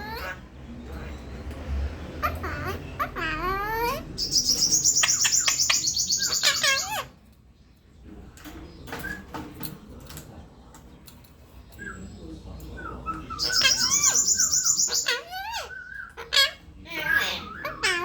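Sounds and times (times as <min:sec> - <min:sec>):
parakeet chirps: 0:02.2 - 0:07.1, 0:12.9 - 0:18.0.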